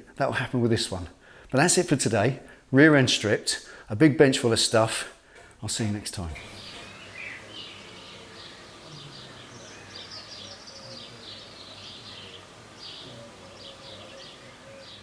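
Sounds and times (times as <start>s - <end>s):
faint low hum: 5.6s - 15.0s
small birds chirping and singing: 5.7s - 15.0s.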